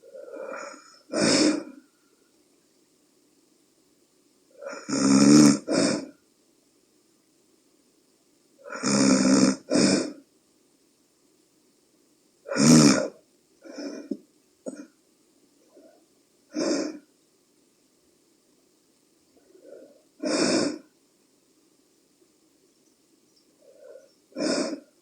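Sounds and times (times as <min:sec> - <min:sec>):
woman snoring: 0:00.0 - 0:01.8, 0:04.6 - 0:06.1, 0:08.6 - 0:10.2, 0:12.5 - 0:14.1, 0:19.5 - 0:20.9, 0:23.6 - 0:25.0.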